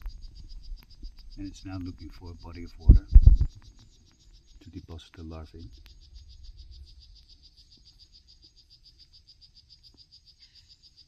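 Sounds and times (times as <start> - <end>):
faint low rumble: 0.0 - 3.7.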